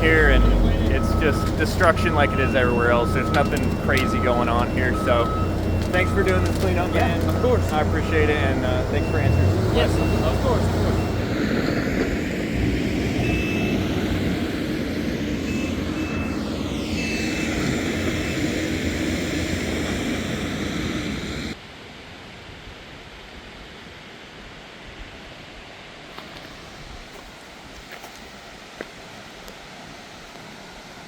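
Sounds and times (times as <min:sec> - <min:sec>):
heavy vehicle engines running: 0:00.0 - 0:21.6
outdoor background: 0:00.0 - 0:21.8
short high beeps: 0:00.1 - 0:11.3.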